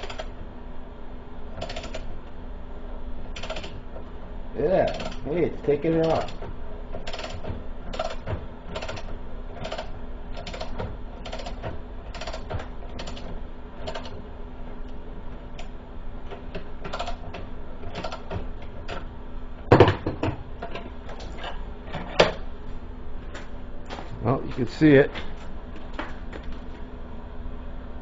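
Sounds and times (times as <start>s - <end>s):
ratchet wrench clicking: 4.9s - 5.2s.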